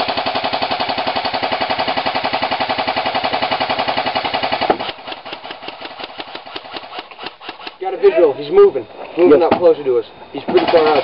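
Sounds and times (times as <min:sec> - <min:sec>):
airsoft gun full-auto rattle: 0:00.0 - 0:07.9, 0:10.5 - 0:11.0
faint rapid firing rattle: 0:00.0 - 0:08.1, 0:10.4 - 0:11.0
gearbox whine: 0:04.0 - 0:11.0.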